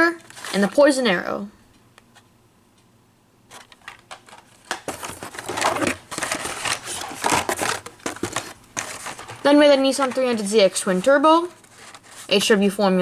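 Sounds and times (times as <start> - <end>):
packaging crinkling and rustling: 0.0 - 0.9, 3.5 - 12.7
plastic packaging clicking: 0.1 - 0.8, 3.5 - 12.3.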